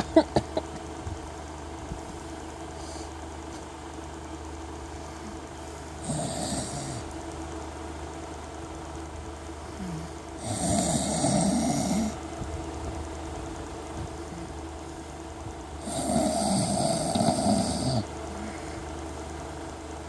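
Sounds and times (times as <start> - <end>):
steady low hum: 0.0 - 20.0
man snoring: 5.9 - 7.1, 9.8 - 12.2, 15.8 - 18.8.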